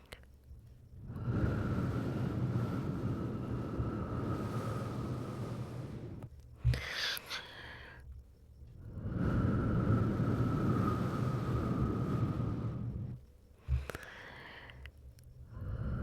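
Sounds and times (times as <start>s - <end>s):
air blowing onto microphone: 1.0s - 7.0s, 8.8s - 14.0s
breath and mouth sound: 12.6s - 16.0s.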